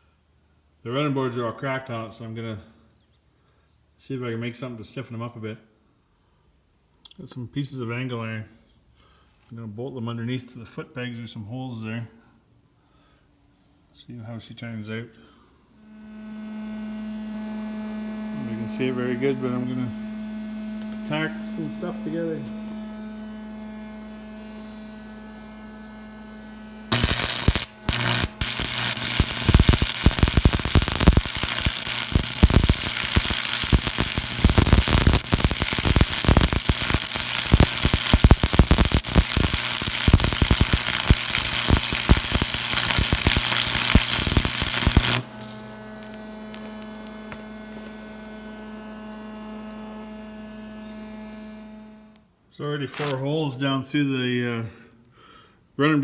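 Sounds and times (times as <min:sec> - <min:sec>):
steady electrical hum: 0:15.7 - 0:52.4
arc welding crackle: 0:15.9 - 0:52.2.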